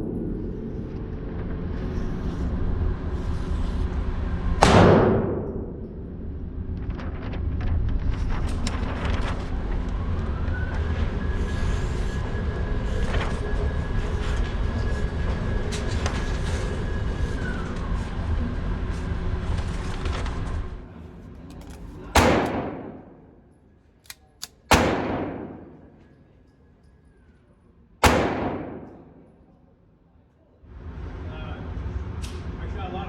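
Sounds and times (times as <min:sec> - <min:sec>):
sharp clicks: 0:21.5 - 0:23.2, 0:24.1 - 0:25.9
pistol shot echoing: 0:21.5 - 0:23.4, 0:24.1 - 0:26.1, 0:28.0 - 0:29.3
steady low rumble: 0:21.6 - 0:23.4, 0:24.4 - 0:26.0, 0:28.0 - 0:29.4.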